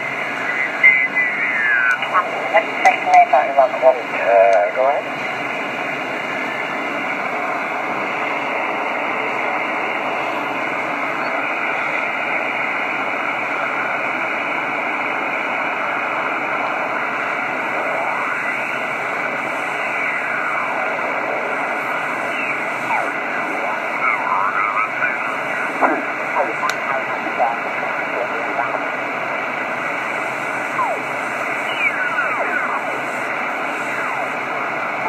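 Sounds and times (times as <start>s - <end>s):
radio static hiss: 0.0s - 35.0s.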